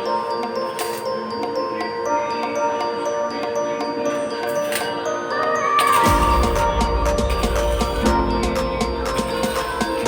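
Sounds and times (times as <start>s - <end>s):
chiming bell-like melody: 0.0s - 10.0s
steady bass beat: 6.1s - 10.0s.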